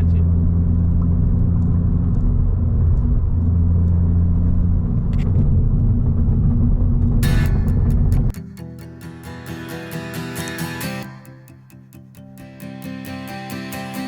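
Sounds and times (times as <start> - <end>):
car engine droning steadily: 0.0 - 8.4.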